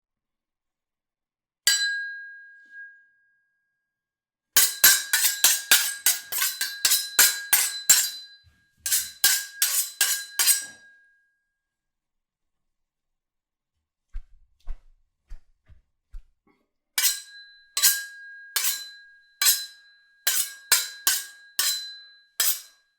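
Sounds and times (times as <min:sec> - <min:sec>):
metal blades clashing: 0:04.6 - 0:08.3, 0:08.9 - 0:10.8, 0:17.0 - 0:22.8.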